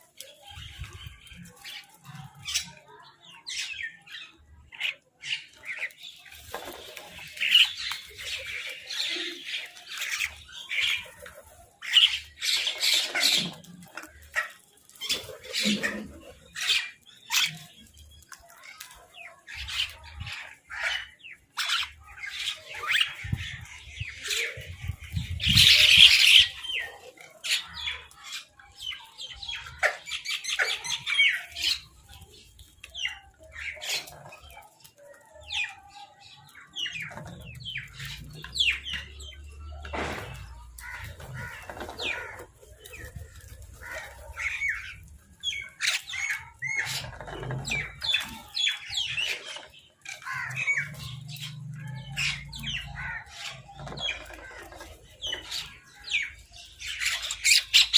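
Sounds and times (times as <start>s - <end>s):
crows and mynahs calling: 19.6s - 24.6s, 36.5s - 57.9s.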